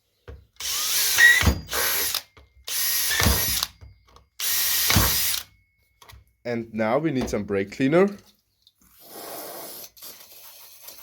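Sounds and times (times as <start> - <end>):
power drill whining: 0.6 - 3.8, 4.4 - 5.5.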